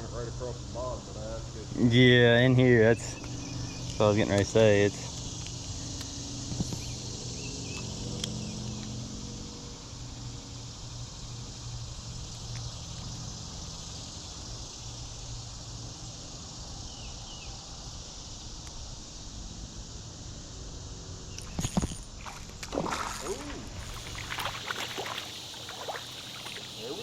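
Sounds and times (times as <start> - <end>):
insects buzzing: 0.0 - 27.0.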